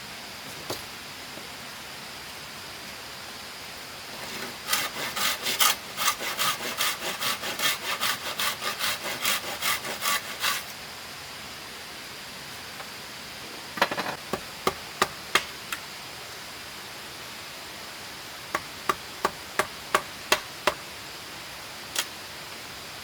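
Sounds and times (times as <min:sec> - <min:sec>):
hand saw cutting: 0:04.2 - 0:10.7.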